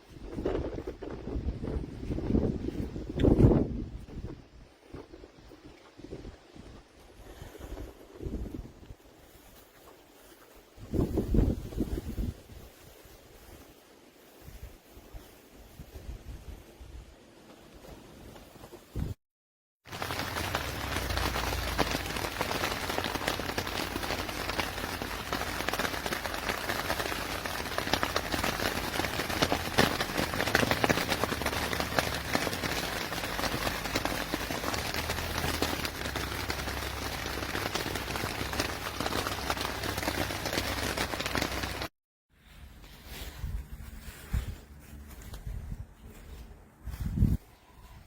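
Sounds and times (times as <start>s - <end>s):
rain patter: 19.9s - 41.9s.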